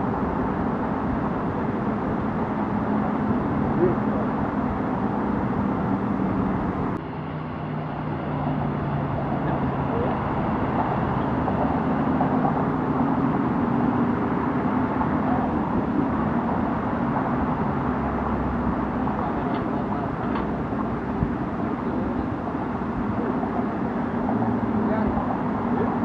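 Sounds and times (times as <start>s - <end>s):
road traffic noise: 0.0s - 26.0s.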